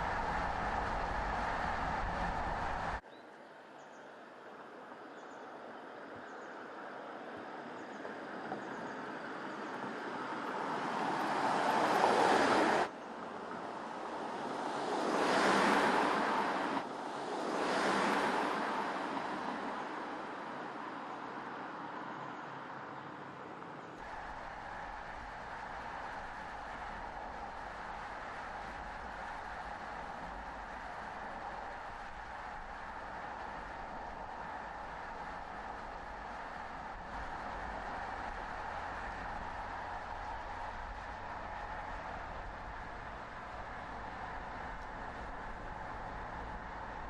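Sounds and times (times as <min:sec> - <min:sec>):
road and wind noise: 0:00.0 - 0:47.0
car driving past: 0:09.8 - 0:12.9, 0:14.1 - 0:20.8.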